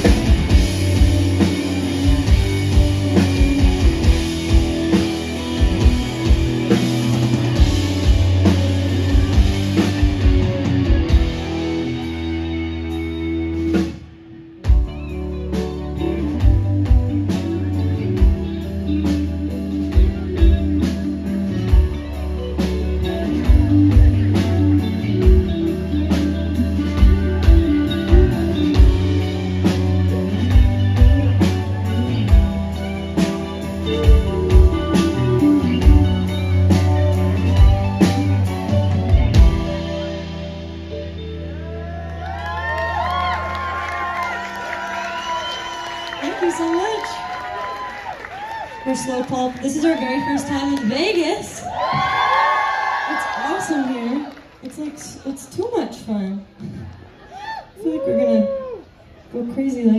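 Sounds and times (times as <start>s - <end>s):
rock band playing live: 0.0s - 57.2s.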